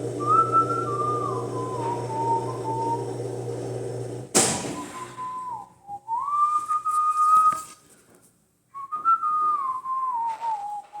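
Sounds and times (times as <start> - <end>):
person whistling a tune: 0.2 - 3.1, 4.8 - 7.8, 8.7 - 11.0.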